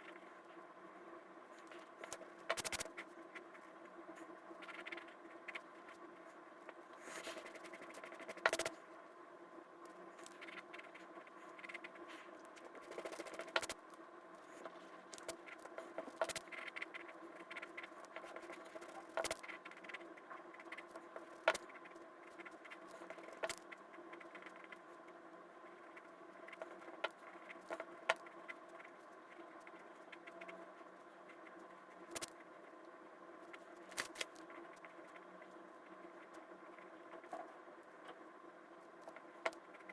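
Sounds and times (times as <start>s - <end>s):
faint electrical hum: 0.0s - 39.9s
pen scratching and tapping: 7.4s - 8.7s, 12.8s - 13.8s, 16.1s - 16.8s, 18.2s - 20.0s.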